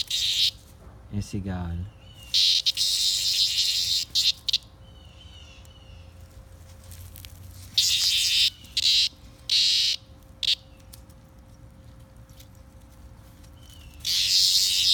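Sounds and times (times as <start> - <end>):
cicada buzzing in harsh bursts: 0.0 - 0.6, 2.3 - 4.7, 7.7 - 10.6, 14.0 - 14.9.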